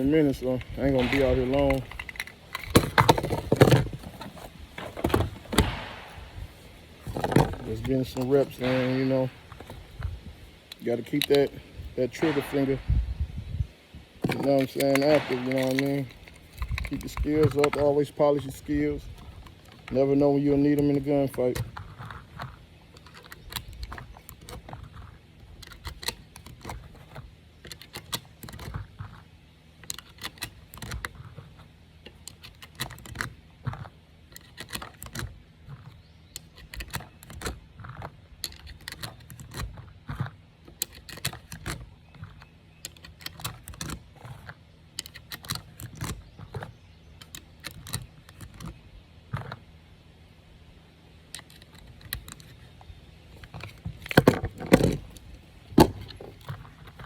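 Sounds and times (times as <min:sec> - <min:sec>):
cartridges clicking into magazine: 0:08.5 - 0:09.6, 0:14.5 - 0:17.8.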